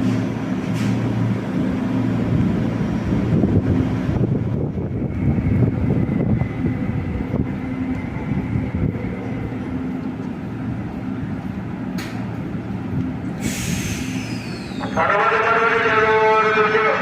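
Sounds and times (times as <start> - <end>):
electric train rumbling: 0.0 - 17.0
compressed air hiss: 13.4 - 14.8.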